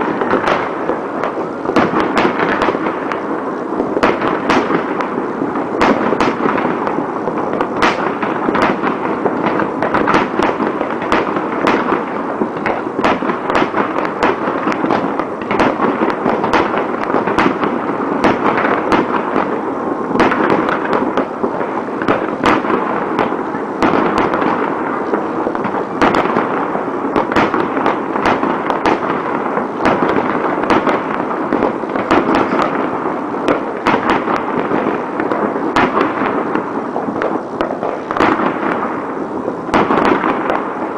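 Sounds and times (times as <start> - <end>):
fireworks and firecrackers crackling: 0.0 - 40.9.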